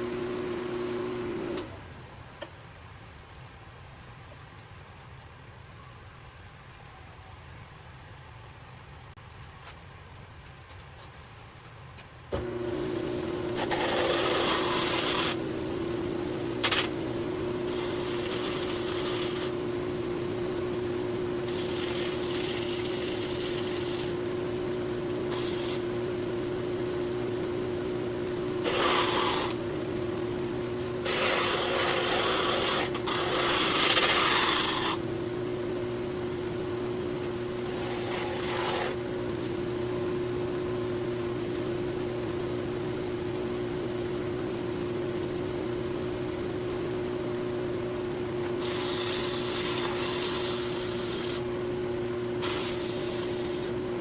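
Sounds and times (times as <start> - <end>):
machine motor hum: 12.3 - 54.0.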